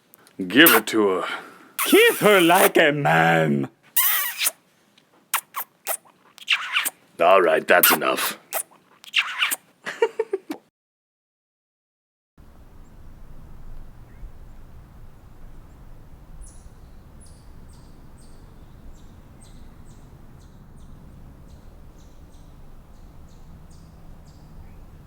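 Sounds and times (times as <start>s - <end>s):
short high chirps: 1.8s - 2.7s, 4.0s - 4.6s, 5.4s - 6.9s
low ambient rumble: 12.4s - 25.0s.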